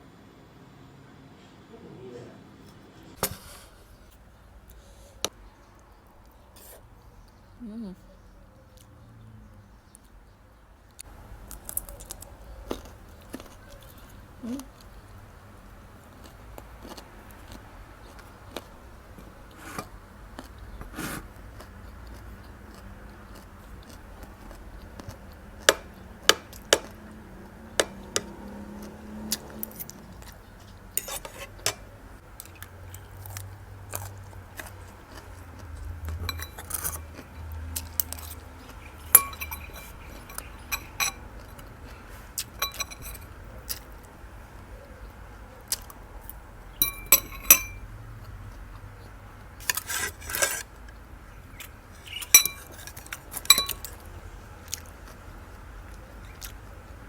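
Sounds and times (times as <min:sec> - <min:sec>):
cutlery clinking against a dish: 0:25.0 - 0:27.0, 0:27.8 - 0:28.4, 0:31.0 - 0:33.1, 0:36.1 - 0:41.7, 0:42.4 - 0:43.9, 0:45.7 - 0:47.9, 0:51.6 - 0:54.1.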